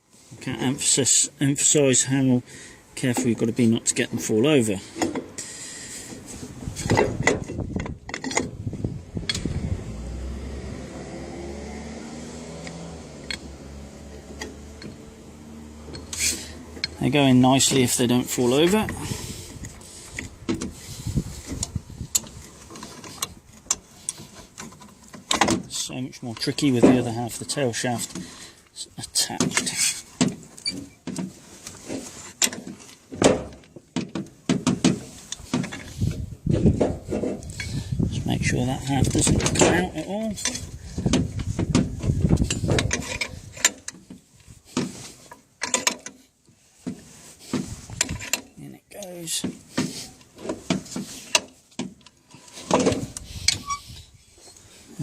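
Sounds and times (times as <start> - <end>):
metal clicks and knocks: 6.8 - 8.6, 12.6 - 13.5, 21.5 - 28.3, 39.0 - 46.2
metal parts clinking and knocking: 6.8 - 8.6, 39.1 - 44.1, 45.3 - 46.2.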